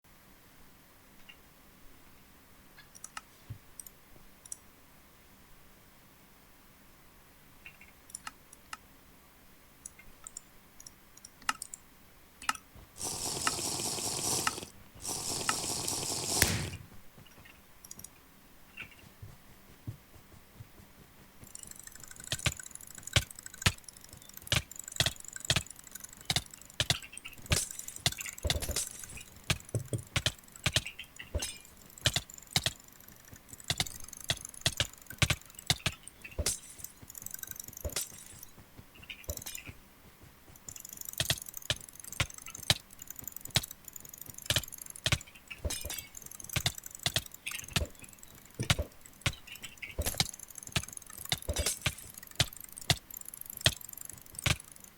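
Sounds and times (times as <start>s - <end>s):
mouse buttons clicking: 12.4s - 18.2s, 21.5s - 54.9s.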